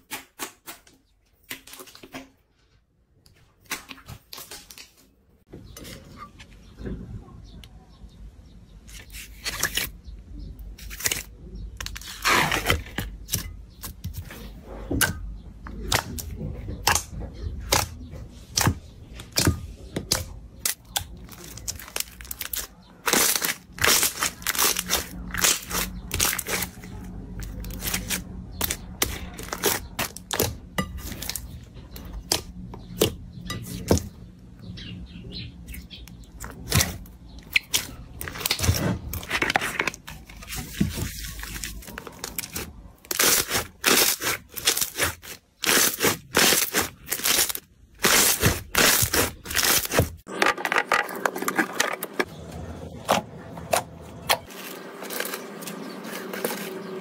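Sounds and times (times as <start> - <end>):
slime clicking and crackling: 15.8 - 33.1, 41.3 - 50.3.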